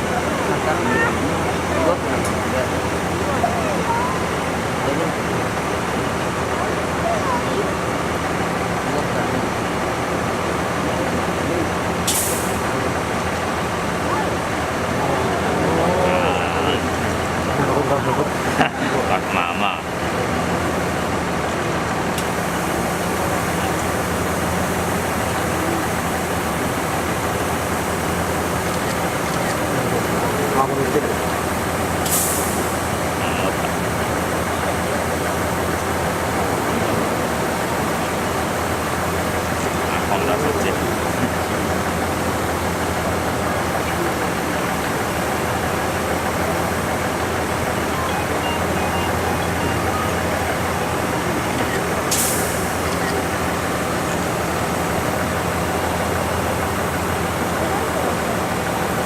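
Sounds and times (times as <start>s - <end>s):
electric train hum and hiss: 0.0s - 59.0s
faint short high tones: 47.6s - 51.9s.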